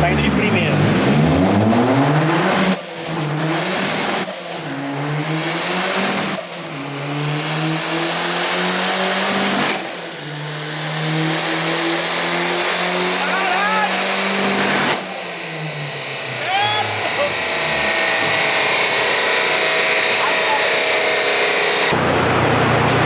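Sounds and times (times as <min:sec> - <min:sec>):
car engine at full throttle: 0:00.0 - 0:23.0.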